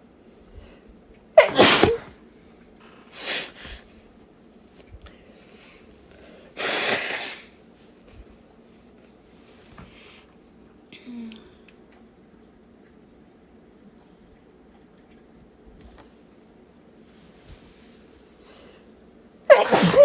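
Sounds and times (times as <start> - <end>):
woman sneezing: 1.4 - 2.1, 6.6 - 7.5, 19.5 - 20.0.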